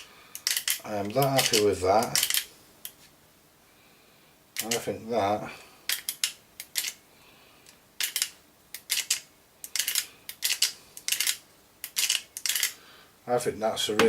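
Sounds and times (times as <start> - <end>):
sharp mechanical clicks: 0.3 - 2.5.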